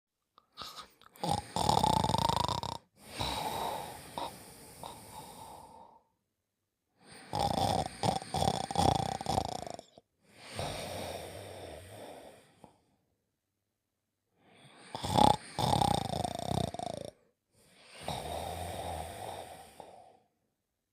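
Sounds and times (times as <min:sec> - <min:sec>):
cartoon snoring: 0:00.5 - 0:06.1, 0:07.0 - 0:12.9, 0:14.7 - 0:17.3, 0:17.9 - 0:20.3.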